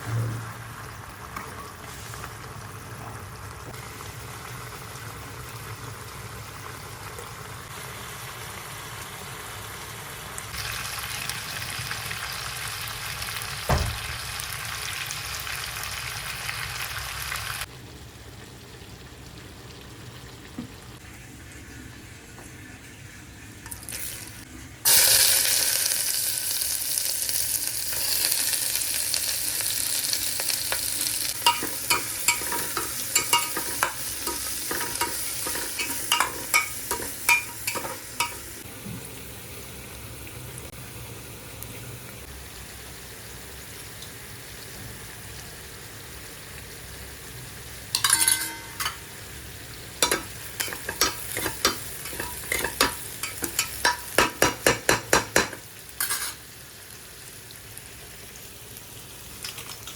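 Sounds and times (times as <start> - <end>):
food sizzling in hot oil: 0.1 - 22.2, 23.6 - 59.9
spoon scraping a pan: 31.4 - 38.5, 50.0 - 56.4.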